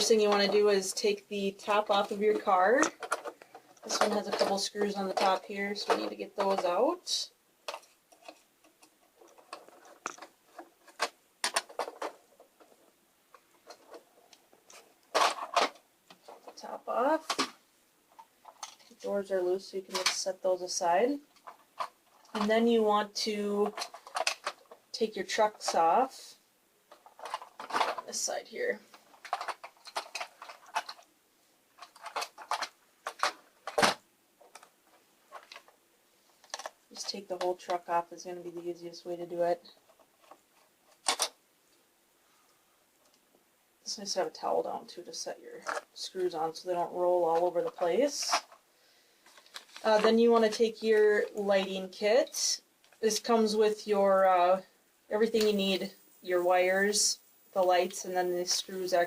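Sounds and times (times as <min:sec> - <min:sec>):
plastic clatter: 0:00.0 - 0:06.7, 0:07.6 - 0:19.0, 0:21.3 - 0:22.6, 0:23.5 - 0:25.9, 0:26.9 - 0:28.2, 0:28.8 - 0:31.1, 0:31.8 - 0:35.8, 0:36.4 - 0:37.8, 0:39.6 - 0:41.4, 0:45.6 - 0:46.3, 0:49.2 - 0:51.7.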